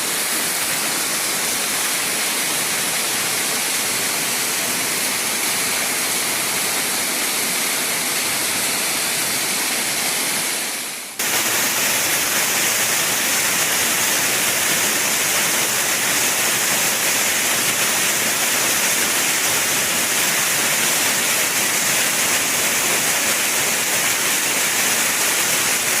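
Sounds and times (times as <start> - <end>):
waterfall rushing: 0.0 - 26.0.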